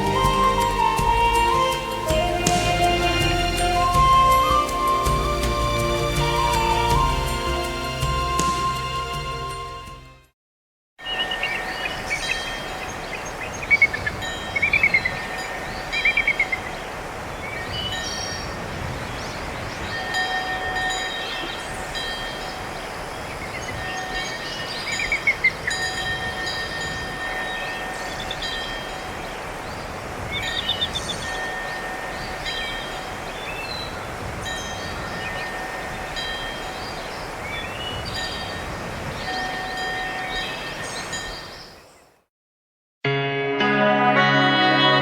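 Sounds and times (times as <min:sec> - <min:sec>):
steady hiss: 0:00.0 - 0:09.8
chime-like ringtone with trills: 0:00.0 - 0:10.0.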